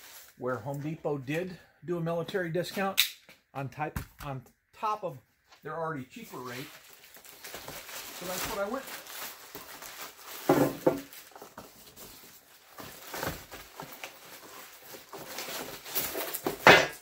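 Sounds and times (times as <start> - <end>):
packaging rustling and scraping: 6.2 - 17.0.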